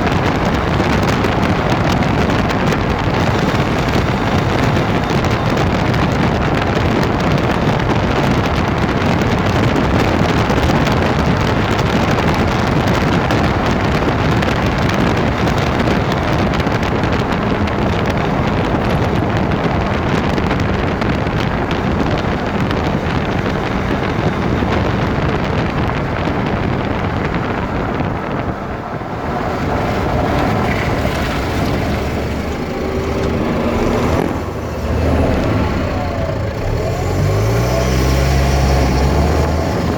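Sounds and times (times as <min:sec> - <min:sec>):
road and drivetrain noise: 0:00.0 - 0:39.9
grinding: 0:29.9 - 0:39.9.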